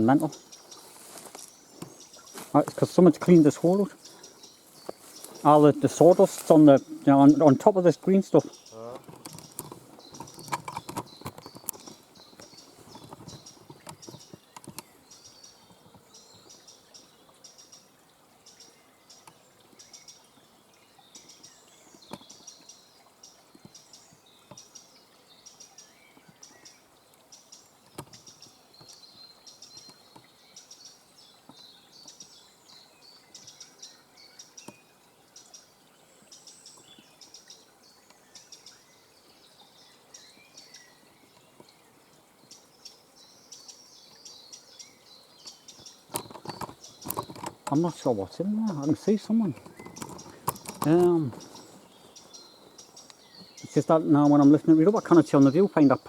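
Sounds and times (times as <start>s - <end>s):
rustling: 0.6s - 4.0s, 4.6s - 7.1s, 46.1s - 52.8s
bird alarm calls: 45.4s - 56.0s
faint handling clicks: 48.9s - 51.6s.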